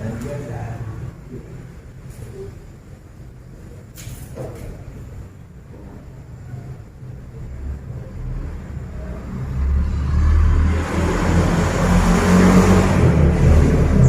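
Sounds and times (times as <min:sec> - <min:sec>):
vehicle engine rumble: 0:04.6 - 0:14.0.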